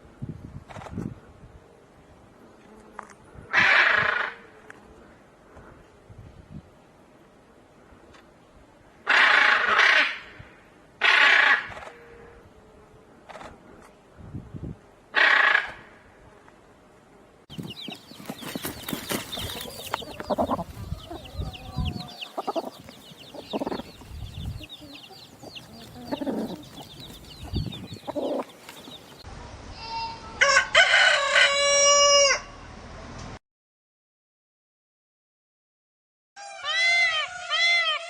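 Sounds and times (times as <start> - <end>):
chickens clucking: 17.5 - 29.2
chicks peeping: 17.5 - 29.2
rooster crowing: 19.6 - 27.4, 30.4 - 32.6.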